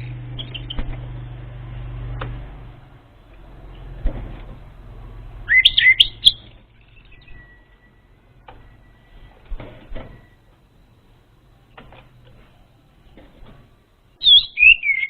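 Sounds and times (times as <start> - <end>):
low steady hum: 0.0 - 15.0
thrush whistled song: 5.5 - 9.4, 14.2 - 15.0
faint thin whistle tone: 7.1 - 8.1.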